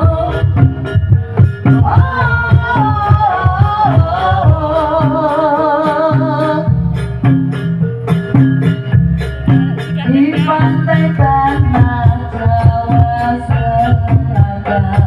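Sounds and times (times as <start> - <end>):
person singing with vibrato: 0.0 - 1.0, 1.6 - 7.1, 9.6 - 15.0
drumming and percussion: 0.0 - 15.0.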